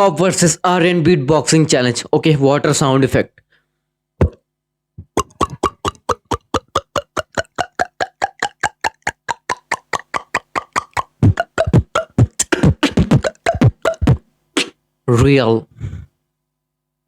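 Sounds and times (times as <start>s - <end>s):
beatboxed water-drop plops: 4.2s - 4.4s, 5.0s - 14.8s.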